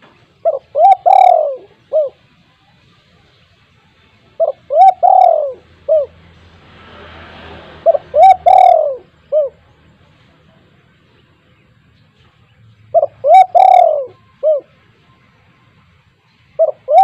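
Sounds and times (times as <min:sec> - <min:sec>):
dove cooing: 0:00.4 - 0:02.3, 0:04.4 - 0:06.2, 0:07.8 - 0:09.6, 0:12.9 - 0:14.8, 0:16.6 - 0:17.0.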